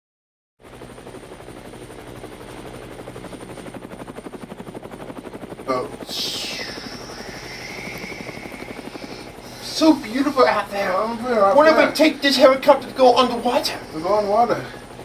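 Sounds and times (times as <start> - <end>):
helicopter rotor beating: 0.6 - 15.0
hiss: 6.1 - 9.7.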